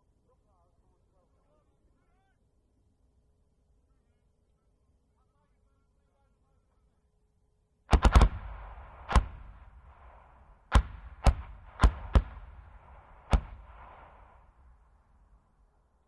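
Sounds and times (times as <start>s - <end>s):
mortar firing: 7.9s - 15.4s.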